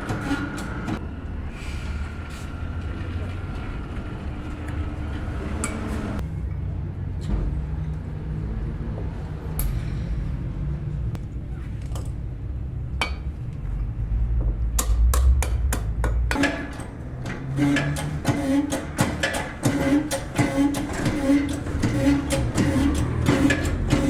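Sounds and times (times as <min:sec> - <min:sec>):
low steady rumble: 0:01.0 - 0:18.9
hammer striking metal: 0:13.0 - 0:13.4, 0:14.8 - 0:24.0.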